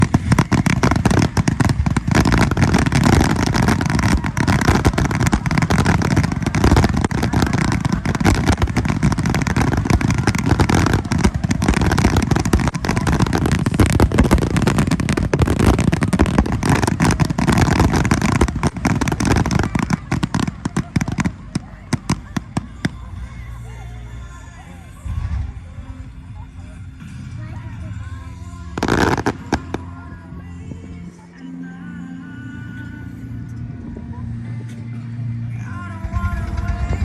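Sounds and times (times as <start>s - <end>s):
fireworks bursting with crackle: 0.0s - 23.6s, 28.7s - 30.3s, 36.0s - 37.0s.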